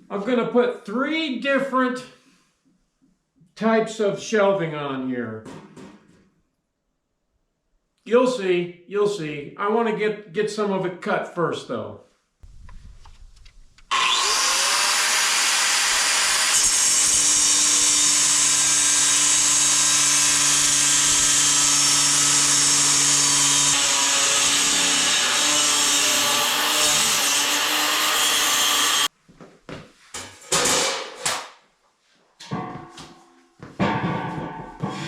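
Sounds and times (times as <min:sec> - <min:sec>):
power tool cutting metal: 0:13.9 - 0:29.1.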